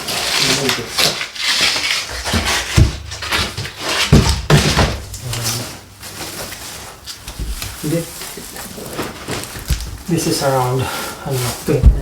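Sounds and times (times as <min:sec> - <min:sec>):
sharp knocks: 0:02.2 - 0:05.2.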